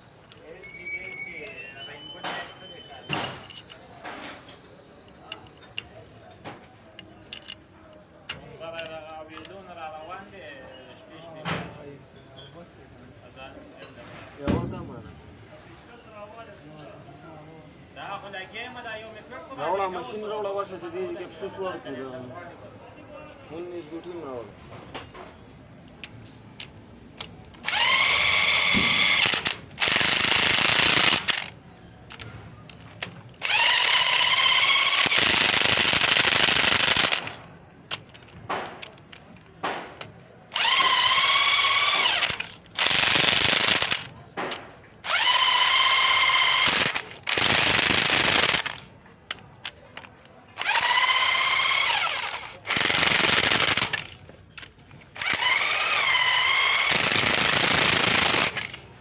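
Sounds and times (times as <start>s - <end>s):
impact wrench whine and rattle: 2.2s - 3.9s, 26.0s - 58.9s.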